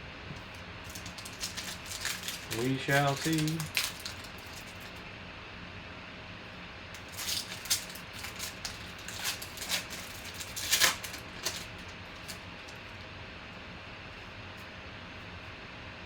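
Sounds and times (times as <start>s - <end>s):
card wrappers rustling and crinkling: 0.4s - 5.0s, 7.0s - 13.1s.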